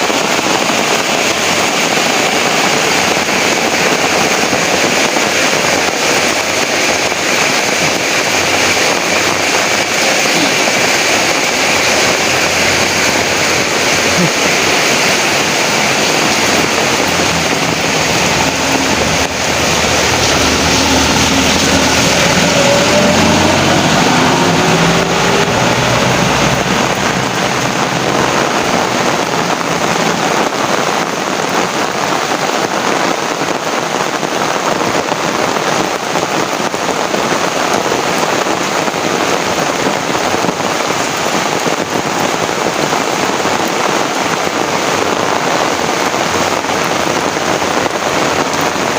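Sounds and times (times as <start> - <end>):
heavy rain pouring: 0.0 - 48.9
motor vehicle passing: 7.6 - 30.3.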